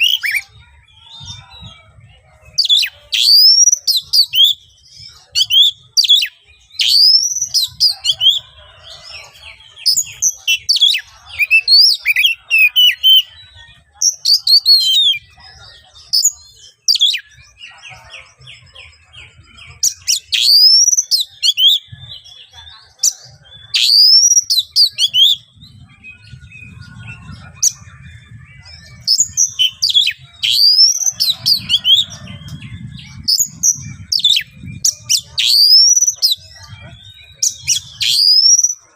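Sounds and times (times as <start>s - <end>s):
magpie-robin singing harsh whistles: 2.6s - 8.4s, 19.7s - 22.4s, 23.1s - 38.9s.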